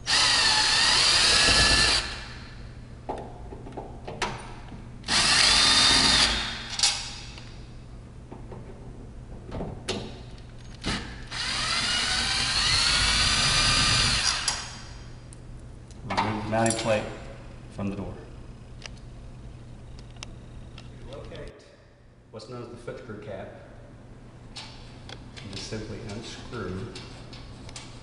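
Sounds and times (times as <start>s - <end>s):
power drill whining: 0.0s - 2.3s, 5.1s - 6.5s, 10.8s - 14.7s.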